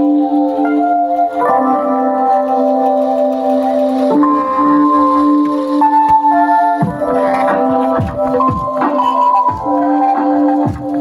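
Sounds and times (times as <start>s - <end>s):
electronic music with synth tones: 0.0s - 11.0s.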